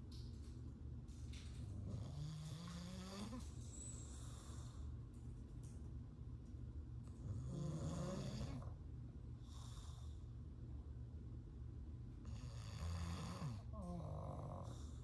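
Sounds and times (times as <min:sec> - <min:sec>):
dog snoring: 0:01.7 - 0:04.8, 0:07.2 - 0:08.8, 0:09.4 - 0:10.2, 0:12.2 - 0:15.0.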